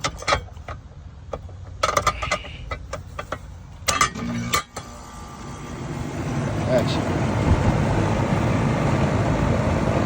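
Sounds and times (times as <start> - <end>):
sharp clicks and knocks: 0.0 - 4.9.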